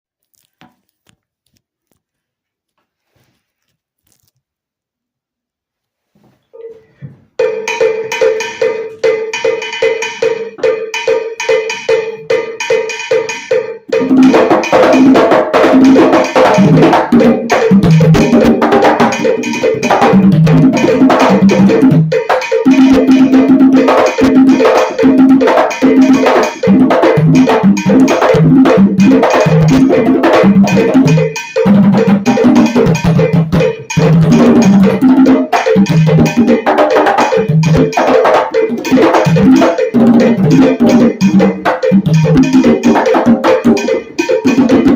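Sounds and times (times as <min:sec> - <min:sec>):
hand drum playing: 0:07.4 - 0:44.9.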